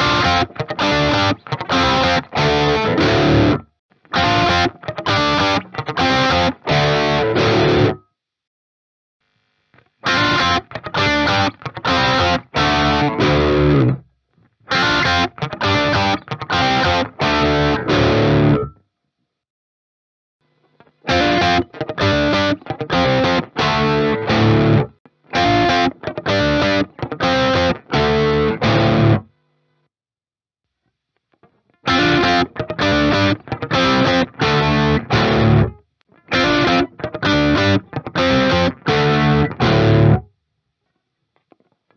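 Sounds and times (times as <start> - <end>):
distorted electric guitar chords: 0.0 - 8.0, 10.0 - 14.0, 14.7 - 18.8, 20.8 - 29.3, 31.8 - 40.3.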